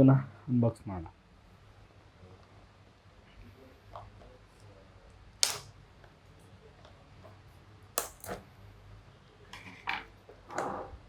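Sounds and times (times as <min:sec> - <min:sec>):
box packaging clicking: 0:05.4 - 0:05.7, 0:08.0 - 0:08.4.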